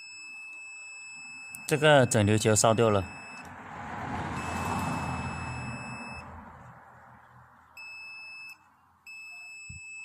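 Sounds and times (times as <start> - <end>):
multimeter high-pitched beeps: 0.0 - 2.2, 3.0 - 3.4, 4.4 - 6.2, 7.8 - 10.0.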